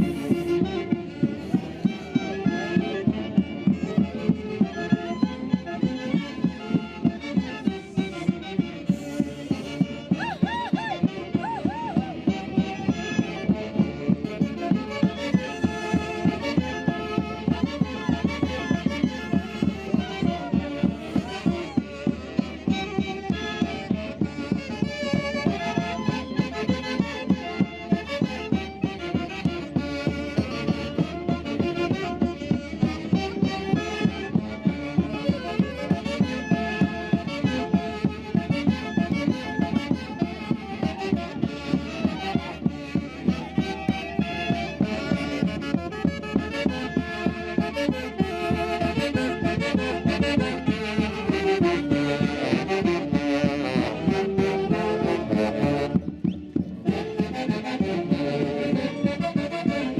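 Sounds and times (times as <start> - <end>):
festive band playing live: 0.0 - 59.9.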